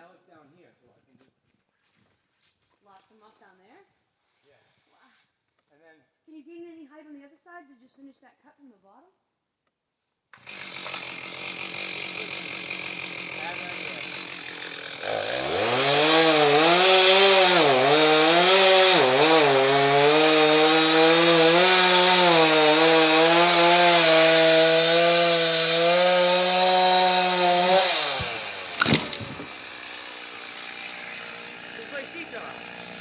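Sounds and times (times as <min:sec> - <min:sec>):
chainsaw cutting wood: 0:10.3 - 0:33.0
loud wood cracking: 0:10.4 - 0:31.6.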